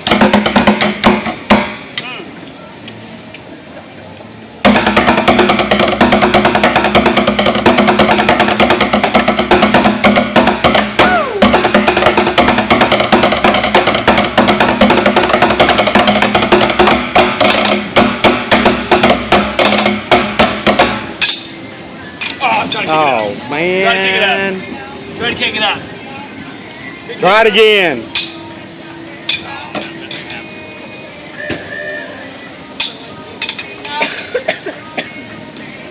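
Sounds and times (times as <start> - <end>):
fast dense drum music: 4.6 - 21.0.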